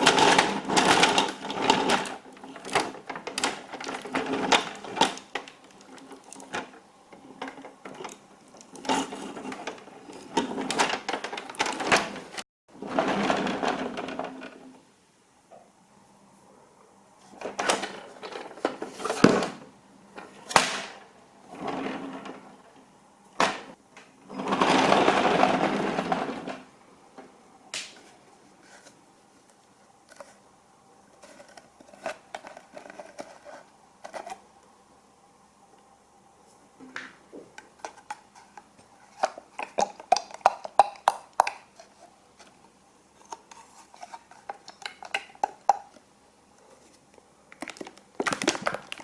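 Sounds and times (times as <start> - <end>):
plastic toy vehicles rattling: 0.0 - 14.7, 24.3 - 26.7.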